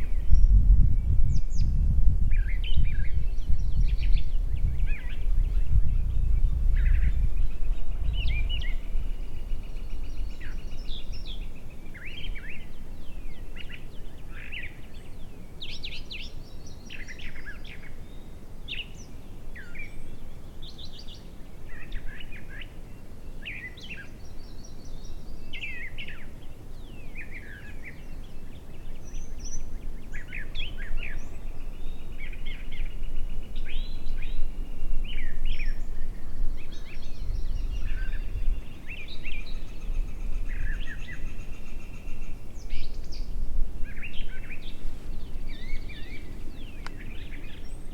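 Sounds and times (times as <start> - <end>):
songbirds singing: 0.0 - 47.9
low rumble: 0.2 - 9.5.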